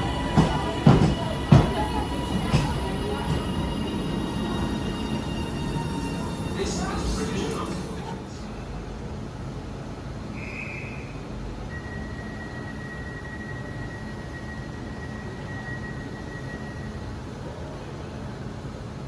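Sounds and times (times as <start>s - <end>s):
train rumbling: 0.0s - 10.3s.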